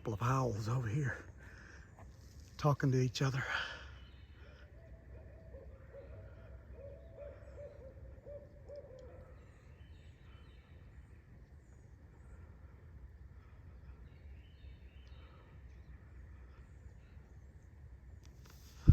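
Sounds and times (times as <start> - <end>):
owls hooting: 4.4 - 9.7.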